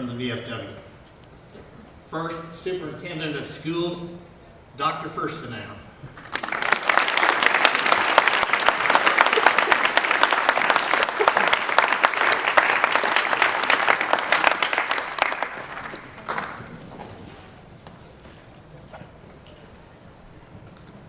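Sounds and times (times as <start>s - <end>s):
audience applauding: 6.2s - 16.9s.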